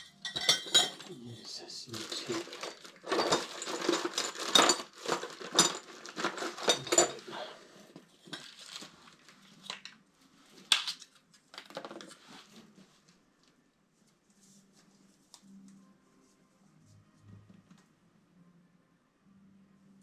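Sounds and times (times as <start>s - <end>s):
hands rustling plumbing parts: 0.0s - 13.2s.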